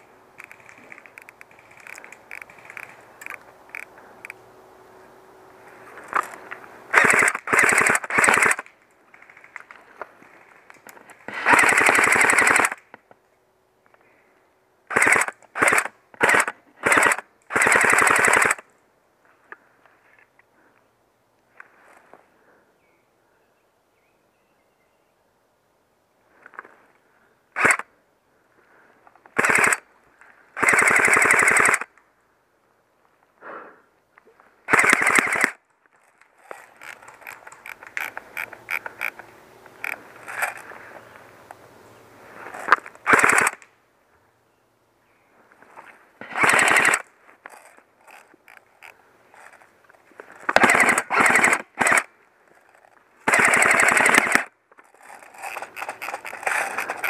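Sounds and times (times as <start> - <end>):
airsoft rifles automatic fire: 6.9 - 8.7, 11.3 - 12.8, 14.9 - 18.6, 29.4 - 29.8, 30.6 - 31.9, 34.7 - 35.6, 43.0 - 43.6, 46.2 - 47.1, 50.5 - 52.1, 53.2 - 57.0.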